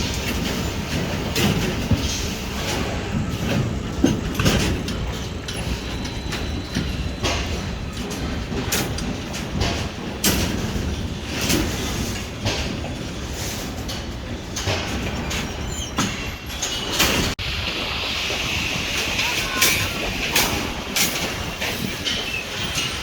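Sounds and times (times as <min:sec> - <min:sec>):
metallic clanks and knocks: 0:00.0 - 0:17.4.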